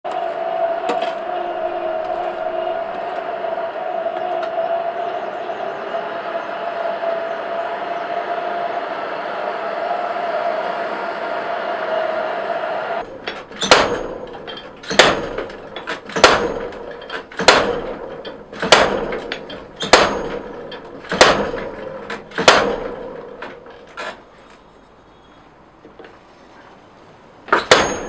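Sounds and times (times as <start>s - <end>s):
steady rushing noise with hum: 0.2s - 24.8s
hammer blows on steel anvil: 13.0s - 23.8s, 27.5s - 28.0s.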